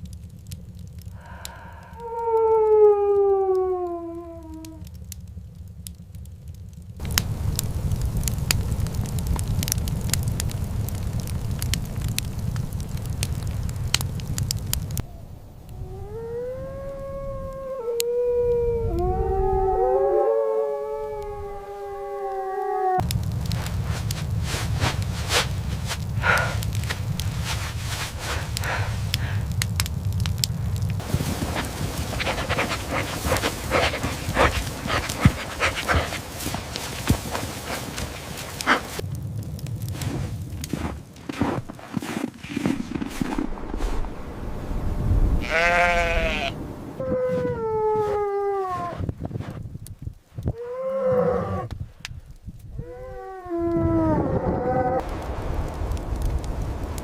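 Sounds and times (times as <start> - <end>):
fire crackling and popping: 0.0 - 19.7, 21.0 - 57.0
dog howling: 1.9 - 4.9, 15.8 - 23.1, 31.3 - 39.0, 45.5 - 49.0, 52.8 - 55.1
low rumble: 4.0 - 48.0, 53.8 - 57.0
dog panting: 31.0 - 39.0.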